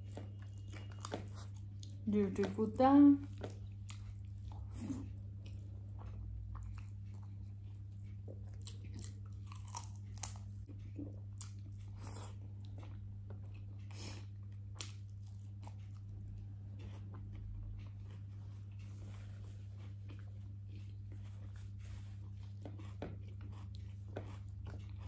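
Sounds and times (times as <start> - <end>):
person chewing crunchy food: 0.0 - 2.6, 3.2 - 25.0
low steady hum: 0.0 - 25.0.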